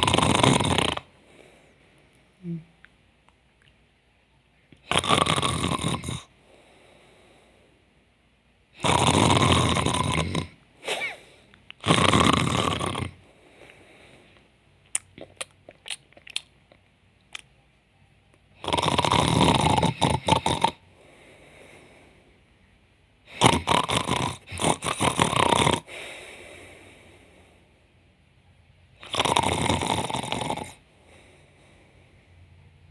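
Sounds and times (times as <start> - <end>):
woman fake snoring: 0.0 - 1.2, 4.8 - 6.3, 8.8 - 13.2, 18.6 - 20.8, 23.3 - 26.1, 29.0 - 30.8.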